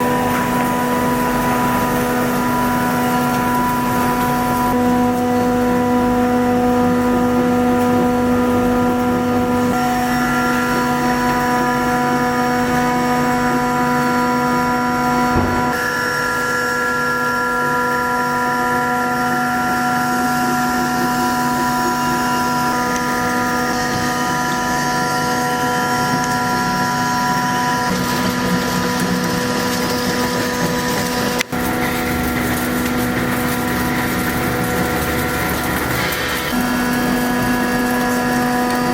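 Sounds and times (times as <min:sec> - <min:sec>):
ice machine humming: 0:00.0 - 0:38.9
short knock: 0:15.3 - 0:15.8.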